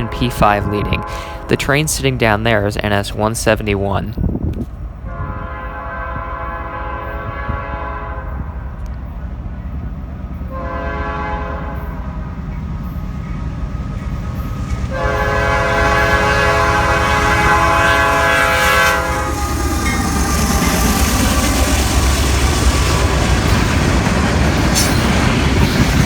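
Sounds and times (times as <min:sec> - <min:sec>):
locomotive air horn blasts: 0:00.0 - 0:01.7, 0:05.0 - 0:08.7, 0:10.5 - 0:12.0, 0:14.9 - 0:19.6
passing train rumble: 0:00.0 - 0:26.0.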